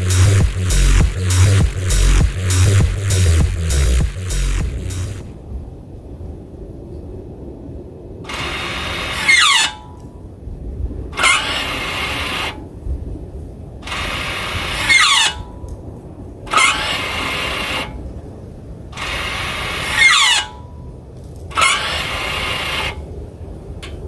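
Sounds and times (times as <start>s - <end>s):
brake pads squeaking: 0.0s - 5.3s, 8.3s - 9.9s, 11.2s - 12.6s, 13.8s - 15.6s, 16.5s - 18.0s, 19.0s - 20.8s, 21.5s - 23.2s
parking brake motor whirring: 0.0s - 5.3s, 8.3s - 9.8s, 11.2s - 12.6s, 13.8s - 15.6s, 16.5s - 18.0s, 19.0s - 20.8s, 21.5s - 23.2s.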